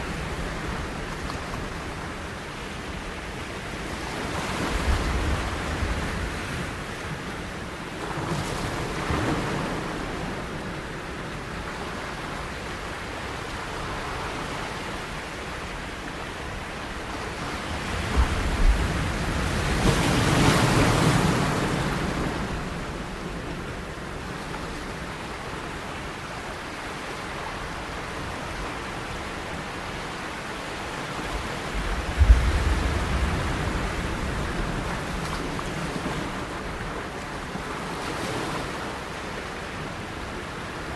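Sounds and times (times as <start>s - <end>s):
surf washing in: 0.0s - 40.9s
large wave breaking: 31.7s - 36.7s.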